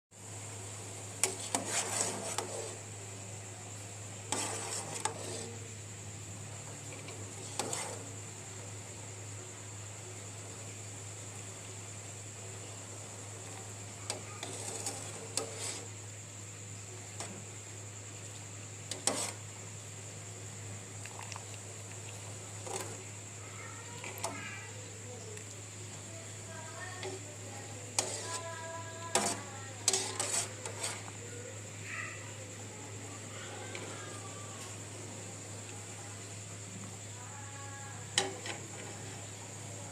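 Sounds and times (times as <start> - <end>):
low hum and hiss: 0.1 - 39.9.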